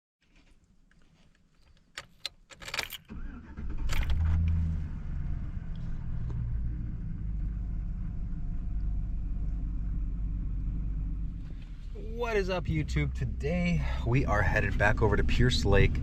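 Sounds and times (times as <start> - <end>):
keys jangling: 2.0 - 3.1
car engine starting and idling: 2.0 - 16.0.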